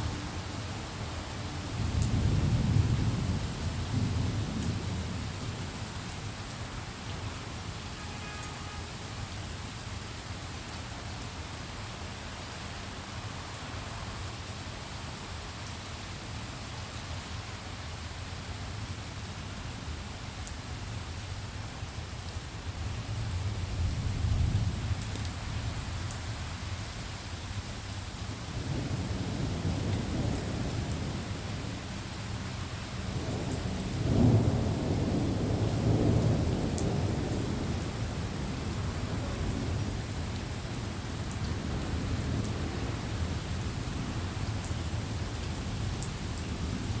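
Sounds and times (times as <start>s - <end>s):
steady rain hissing: 0.0s - 47.0s
thunder rumbling: 1.8s - 5.8s, 28.2s - 47.0s.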